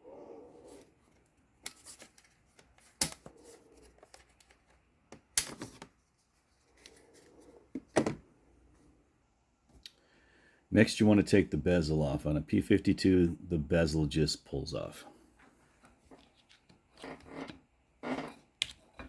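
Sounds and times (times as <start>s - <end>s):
faint handling noise: 0.7s - 8.8s.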